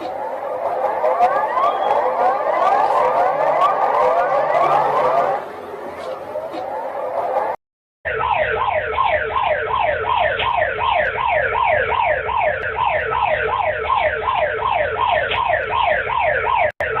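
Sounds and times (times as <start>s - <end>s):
electronic emergency alert tone: 0.0s - 5.5s
fast repeating falling sweep: 0.0s - 7.6s.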